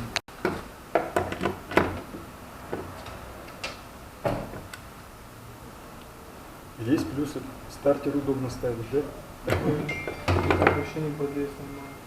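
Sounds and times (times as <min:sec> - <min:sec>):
metal tools clicking and knocking: 0:09.5 - 0:10.9.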